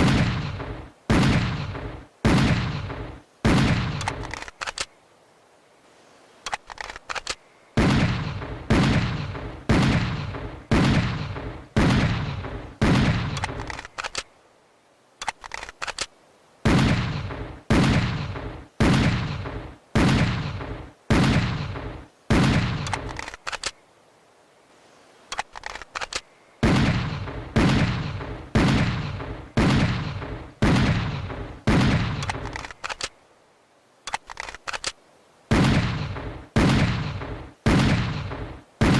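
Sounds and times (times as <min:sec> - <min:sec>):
small clicks: 0:03.9 - 0:05.0, 0:06.4 - 0:07.4, 0:13.3 - 0:14.3, 0:15.2 - 0:16.2, 0:22.8 - 0:23.8, 0:25.3 - 0:26.3, 0:32.1 - 0:33.2, 0:34.0 - 0:35.0.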